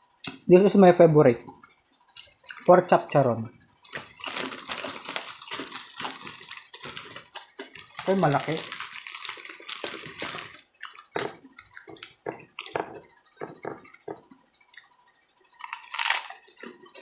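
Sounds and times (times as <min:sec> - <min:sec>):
chewing with wet mouth clicks: 0:01.6 - 0:02.7, 0:09.4 - 0:17.0.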